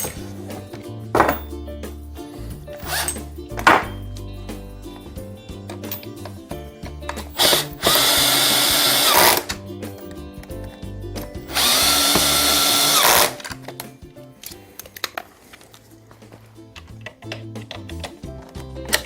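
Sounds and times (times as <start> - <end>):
power drill whining: 2.8 - 3.2, 7.4 - 9.6, 11.5 - 13.5.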